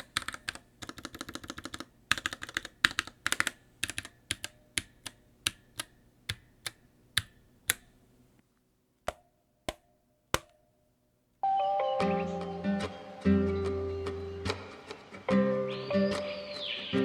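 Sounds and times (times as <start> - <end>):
keyboard keystrokes: 0.0 - 8.0
lo-fi music: 11.4 - 17.0.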